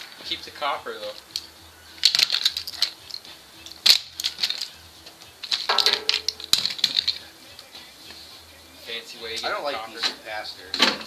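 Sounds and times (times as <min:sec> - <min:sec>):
metal parts rattling and clicking: 0:01.0 - 0:07.4.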